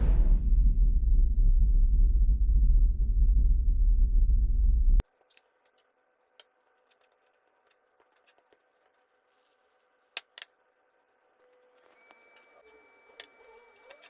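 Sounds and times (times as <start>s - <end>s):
low throbbing sound: 0.0s - 5.0s.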